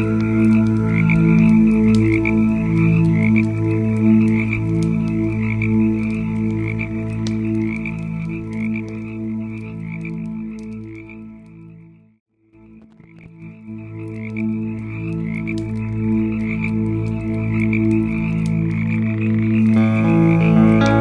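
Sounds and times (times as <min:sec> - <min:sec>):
frogs croaking: 0:00.0 - 0:08.9.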